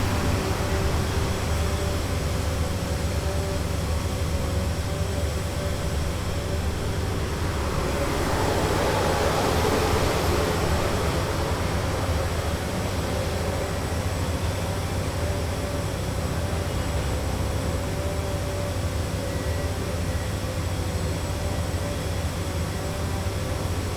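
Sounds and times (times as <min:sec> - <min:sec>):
faint steady hum: 0:00.0 - 0:23.9
low rumble of traffic: 0:00.0 - 0:23.9
vehicle passing: 0:05.5 - 0:13.6.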